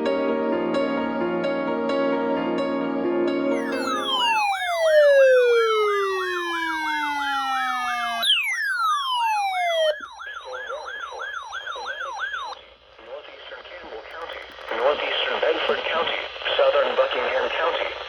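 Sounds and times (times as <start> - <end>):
falling siren tone: 3.6 - 12.6
electronic siren yelping: 3.6 - 12.7.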